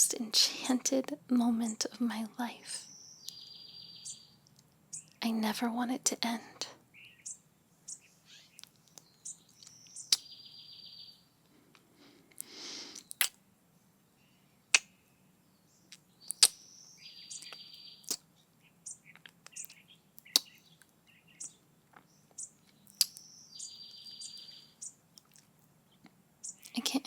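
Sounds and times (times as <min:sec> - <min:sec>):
birds chirping: 0:00.0 - 0:27.0
buzzy bird trill: 0:02.8 - 0:05.2, 0:07.0 - 0:11.2, 0:16.2 - 0:21.6, 0:22.4 - 0:25.0, 0:26.4 - 0:26.8
kissing smacks: 0:09.6 - 0:10.2, 0:12.4 - 0:13.4, 0:14.7 - 0:14.9, 0:15.9 - 0:16.6, 0:18.0 - 0:18.2, 0:19.2 - 0:20.5, 0:22.9 - 0:23.2
person breathing: 0:11.5 - 0:13.1.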